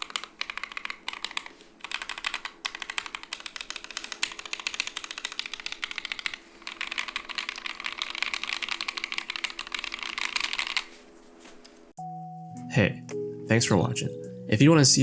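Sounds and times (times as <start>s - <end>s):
rapid keyboard typing: 0.0s - 11.0s.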